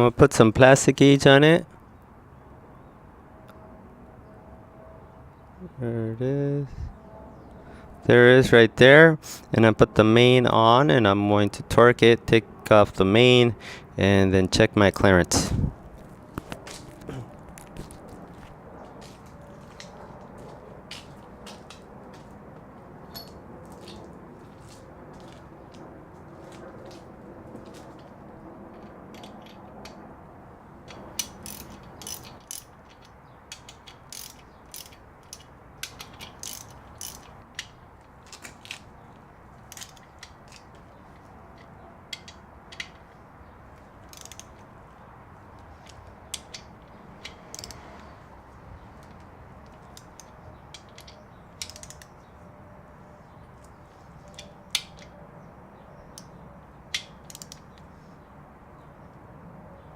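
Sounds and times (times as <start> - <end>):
ratchet wrench clicking: 30.9 - 37.8, 39.7 - 40.6, 44.1 - 44.6, 45.8 - 47.8, 49.9 - 52.1, 57.0 - 57.7.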